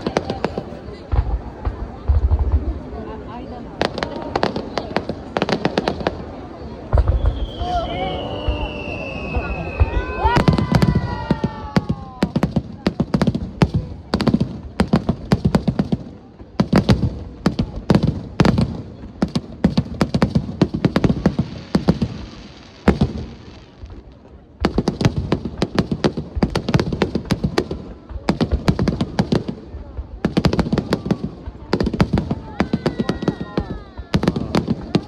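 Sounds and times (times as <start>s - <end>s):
fireworks bangs and crackles: 0.0s - 35.0s.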